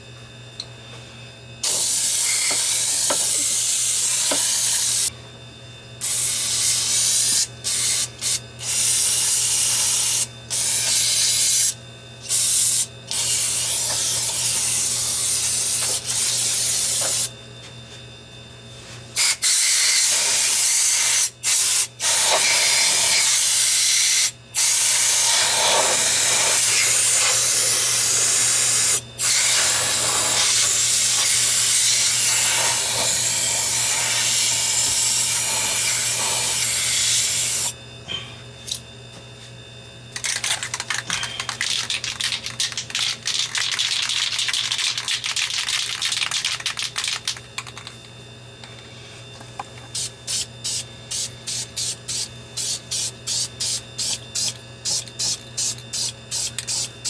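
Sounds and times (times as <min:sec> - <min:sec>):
spray paint can hissing: 0:50.0 - 0:56.9.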